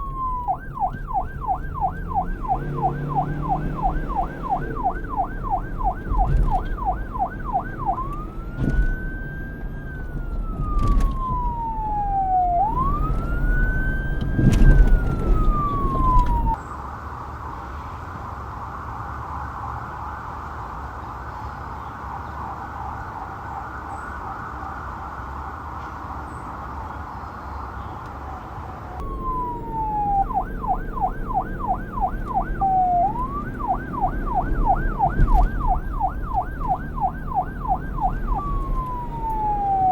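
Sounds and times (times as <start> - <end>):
low rumble: 0.0 - 16.6
police siren yelp and wail: 0.0 - 16.6, 22.0 - 25.8, 28.9 - 39.9.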